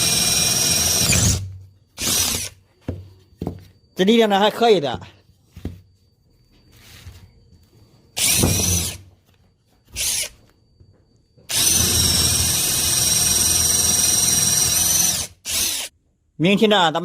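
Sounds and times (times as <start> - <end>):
cordless drill whining: 0.0 - 2.6, 8.2 - 9.0, 9.9 - 10.4, 11.5 - 15.9.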